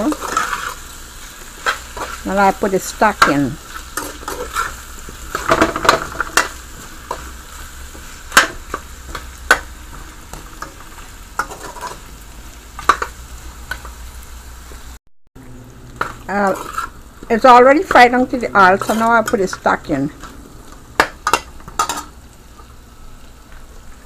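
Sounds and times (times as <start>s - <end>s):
food sizzling in oil: 0.0s - 24.0s
spoon scraping and knocking pot: 17.8s - 20.3s, 21.0s - 22.1s.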